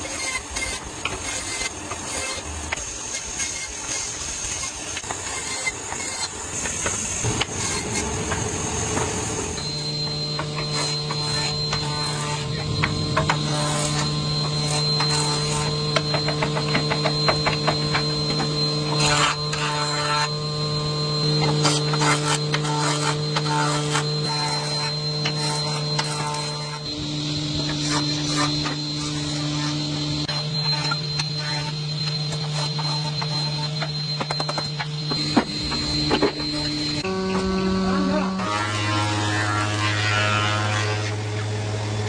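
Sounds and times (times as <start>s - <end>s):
power tool hissing whine: 0.0s - 42.0s
steady motor hum: 0.0s - 42.0s
sharp clicks and knocks: 15.9s - 18.6s.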